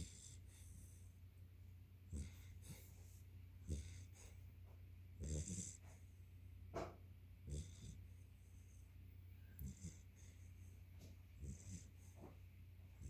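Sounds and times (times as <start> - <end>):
puppy snoring: 0.0 - 1.1, 2.1 - 4.4, 5.2 - 6.0, 6.8 - 10.7, 11.4 - 12.4
steady low hum: 0.0 - 13.0.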